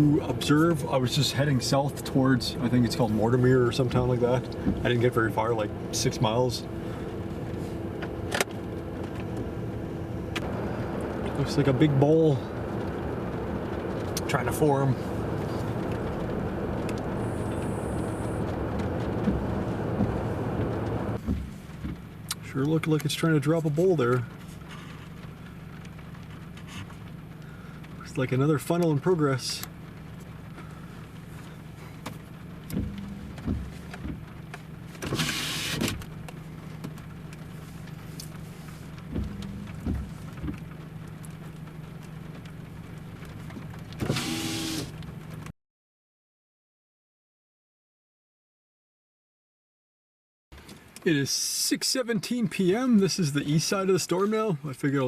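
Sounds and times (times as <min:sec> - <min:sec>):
truck engine idling: 0:00.0 - 0:45.4
soft knocks: 0:39.1 - 0:40.6.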